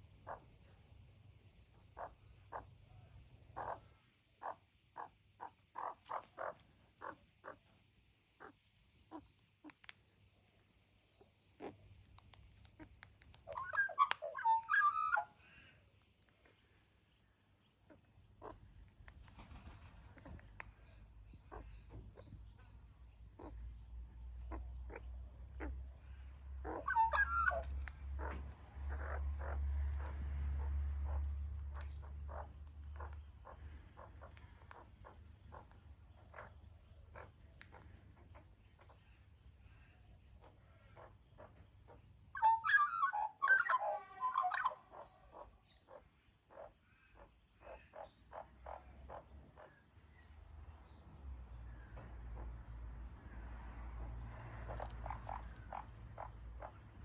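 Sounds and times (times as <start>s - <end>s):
magpie croaky calls: 2.0s - 2.7s, 3.6s - 7.7s, 13.5s - 15.3s, 23.3s - 37.8s, 40.9s - 49.8s, 54.6s - 57.0s
magpie warbling: 13.5s - 15.3s, 26.6s - 30.1s, 42.4s - 45.0s.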